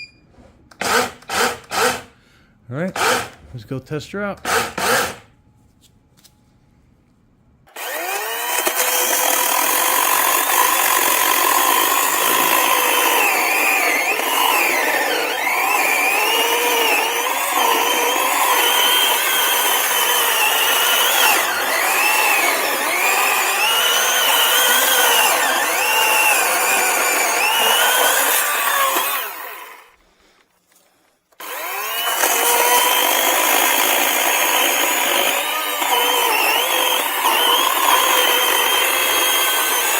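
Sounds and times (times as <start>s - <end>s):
electric chainsaw cutting wood: 7.7s - 30.0s, 31.4s - 39.9s.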